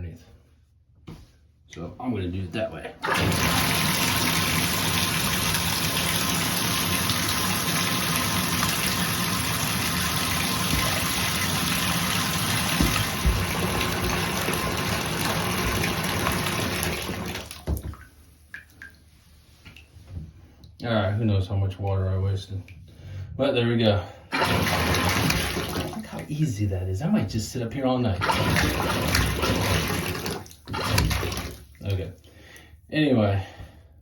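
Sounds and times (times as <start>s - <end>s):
shower water running: 3.0s - 19.8s, 24.3s - 26.7s, 28.2s - 32.1s.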